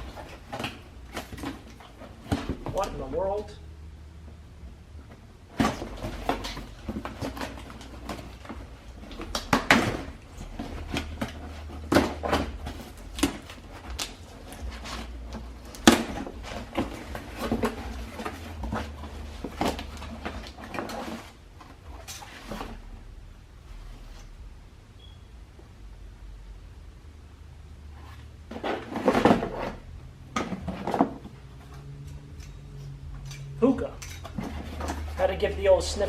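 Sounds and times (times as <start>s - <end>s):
low hum: 0.0s - 28.5s
objects rummaged in a box: 5.6s - 22.9s, 34.0s - 35.6s.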